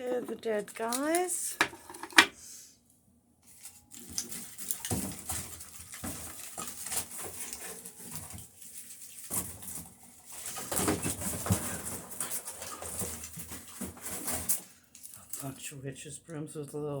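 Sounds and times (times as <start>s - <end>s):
plastic packaging crinkling: 3.4s - 15.6s
small items knocking together: 4.0s - 15.3s.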